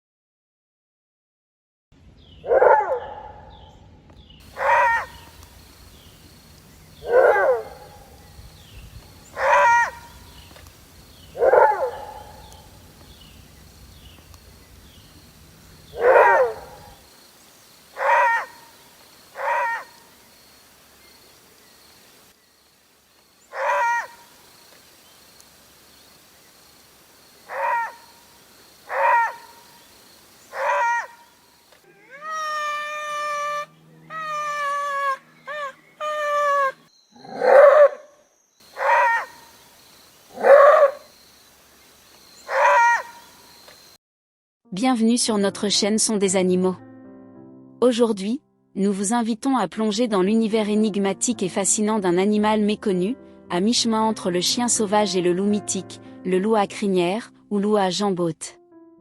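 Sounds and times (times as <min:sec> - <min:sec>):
wolf barking: 0:02.4 - 0:03.7, 0:04.5 - 0:05.5, 0:07.0 - 0:08.3, 0:09.3 - 0:10.3, 0:11.3 - 0:12.8, 0:15.9 - 0:17.0, 0:18.0 - 0:20.1, 0:23.5 - 0:24.3, 0:27.5 - 0:28.1, 0:28.9 - 0:29.8, 0:30.5 - 0:31.4, 0:36.3 - 0:39.5, 0:40.3 - 0:41.1, 0:42.5 - 0:43.3.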